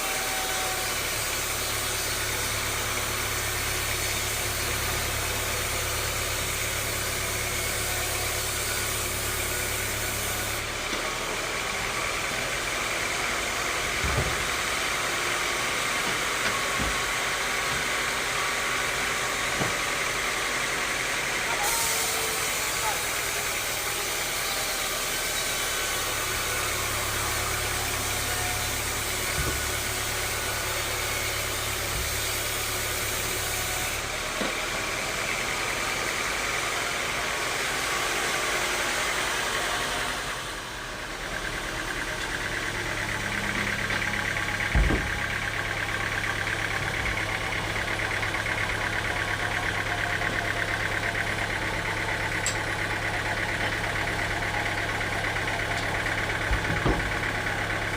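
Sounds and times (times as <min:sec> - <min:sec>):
sawmill machinery whir: 0:00.0 - 0:57.9
engine hum: 0:22.4 - 0:57.9.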